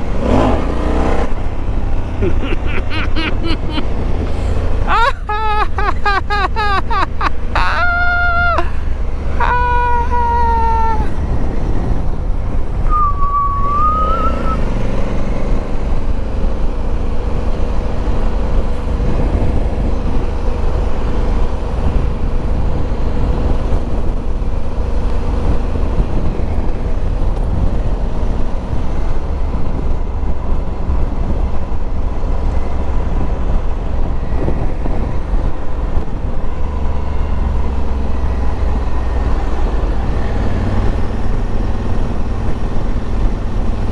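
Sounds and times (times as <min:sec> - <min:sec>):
motorcycle engine rumble: 0:00.0 - 0:43.9
wind noise on microphone: 0:00.0 - 0:43.9
brief gliding tone: 0:12.8 - 0:14.7.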